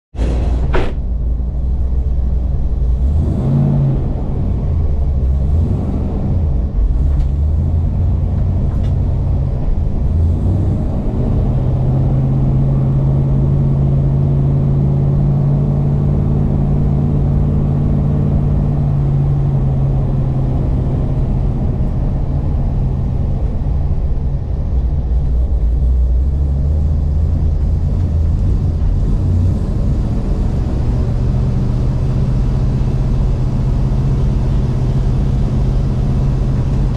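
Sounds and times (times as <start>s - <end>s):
race car engine running: 0.1s - 36.9s.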